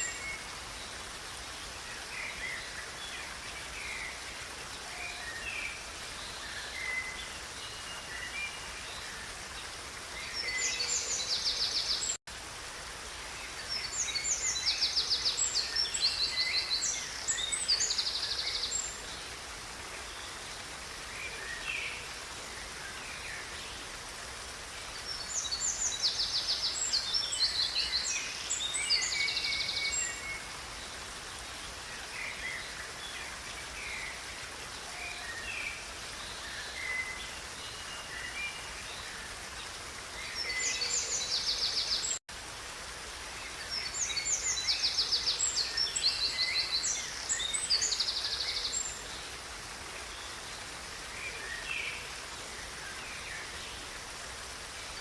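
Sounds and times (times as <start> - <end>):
songbirds trilling and chirping: 0.0 - 12.2
river rushing: 0.0 - 55.0.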